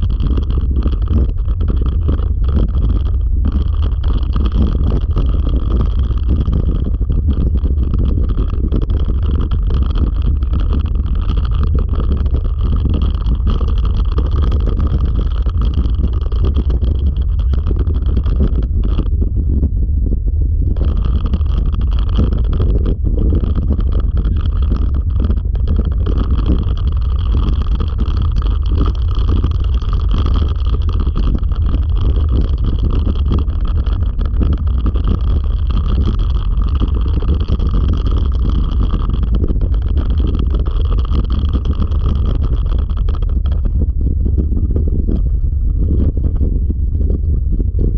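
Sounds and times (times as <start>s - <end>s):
wheels rumbling along a trail: 0.0s - 47.9s
wind buffeting microphone: 0.0s - 47.9s.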